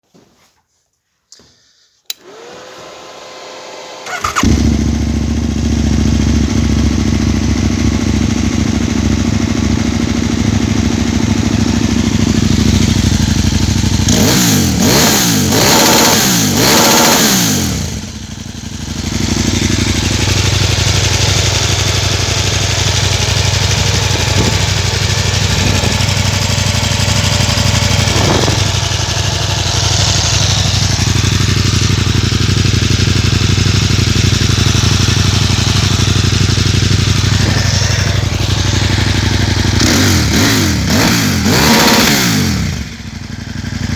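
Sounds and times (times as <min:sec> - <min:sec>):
electric starter cranking: 0:02.1 - 0:05.1, 0:23.8 - 0:31.2, 0:37.0 - 0:38.8
motorcycle engine idling and revving: 0:03.2 - 0:43.9.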